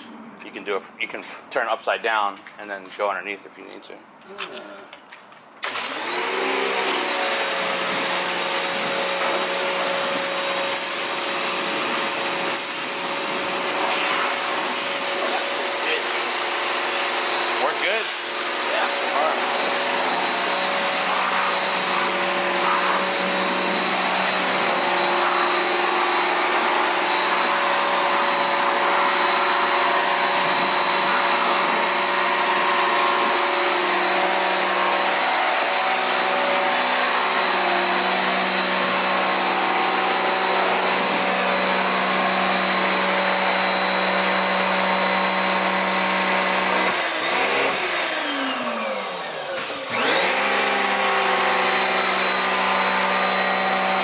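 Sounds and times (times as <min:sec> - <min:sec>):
pressure washer motor whine: 0:05.6 - 0:54.0
water spraying hiss: 0:06.7 - 0:29.2.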